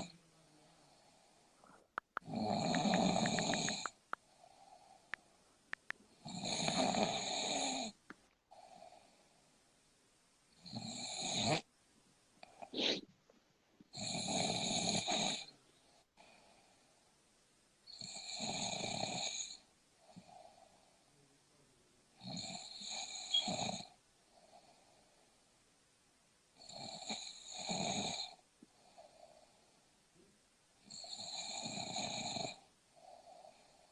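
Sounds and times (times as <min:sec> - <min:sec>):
quiet breathing: 0:00.0 - 0:09.8, 0:12.4 - 0:13.1, 0:13.8 - 0:25.7, 0:26.5 - 0:33.9
person snoring: 0:02.2 - 0:04.0, 0:06.2 - 0:08.0, 0:10.6 - 0:11.7, 0:14.0 - 0:15.5, 0:30.9 - 0:33.9.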